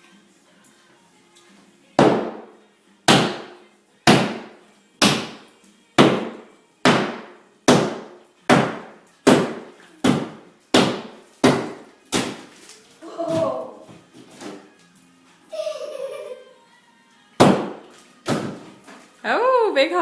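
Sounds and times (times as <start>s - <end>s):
hammer striking drywall: 2.0s - 2.4s, 3.1s - 5.4s, 6.0s - 12.5s, 17.4s - 18.6s.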